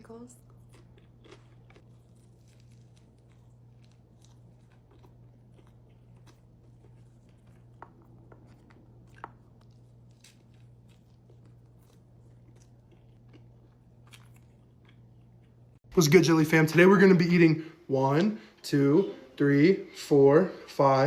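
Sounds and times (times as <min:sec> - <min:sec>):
steady low hum: 0:00.0 - 0:21.0
person chewing food: 0:00.4 - 0:15.9.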